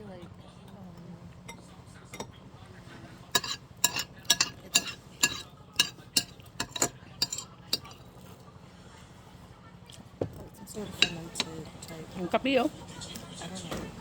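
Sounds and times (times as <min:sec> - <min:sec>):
cutlery clinking against a dish: 0:01.4 - 0:02.4, 0:03.2 - 0:08.4, 0:10.4 - 0:12.0.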